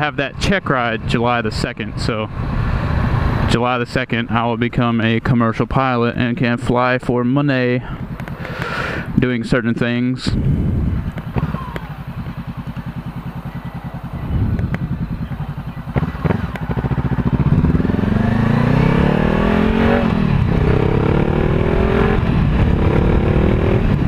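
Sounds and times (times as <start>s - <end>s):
motorcycle engine accelerating: 1.0s - 3.6s, 10.3s - 24.0s.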